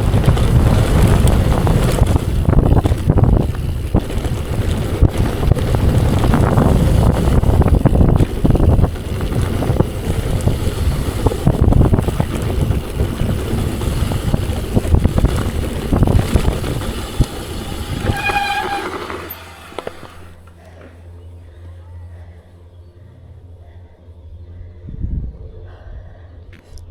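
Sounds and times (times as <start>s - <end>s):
wind rushing over microphone: 0.0s - 20.4s, 24.8s - 26.9s
bike tyre rumble: 0.0s - 23.6s
short squeal: 17.9s - 20.2s.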